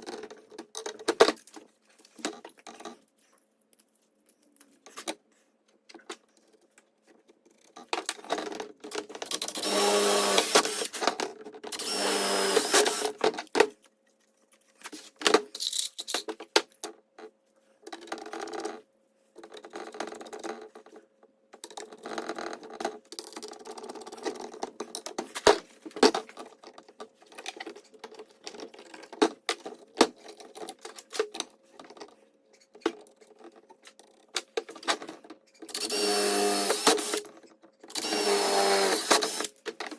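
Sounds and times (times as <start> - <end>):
small electric power tool running: 9.4 - 10.9, 11.8 - 13.2, 35.7 - 37.3, 37.9 - 39.5
clicks and knocks of parts handled: 14.5 - 17.3.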